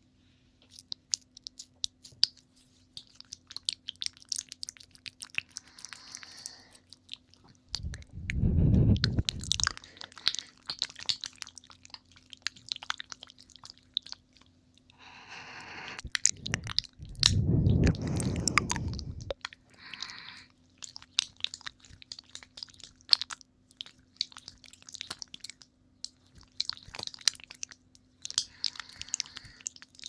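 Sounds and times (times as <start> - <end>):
wet mouth clicks and smacks: 0.6 - 14.5, 16.0 - 20.1, 20.8 - 30.0
breath blown onto microphone: 7.8 - 9.8, 15.0 - 19.4.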